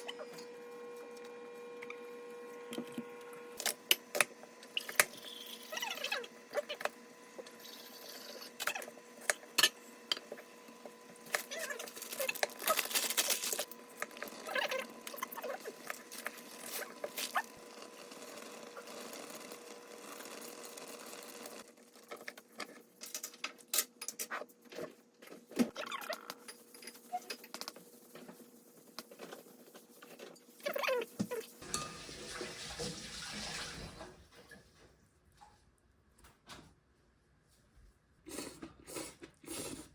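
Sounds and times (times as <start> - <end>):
water running: 11.3 - 21.6, 31.1 - 34.4.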